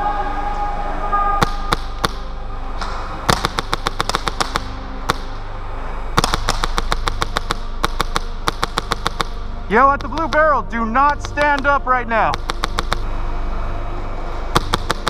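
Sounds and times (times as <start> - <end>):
airsoft gun shots: 1.4 - 2.2, 3.3 - 5.3, 6.2 - 9.4, 12.3 - 13.1, 14.5 - 15.0.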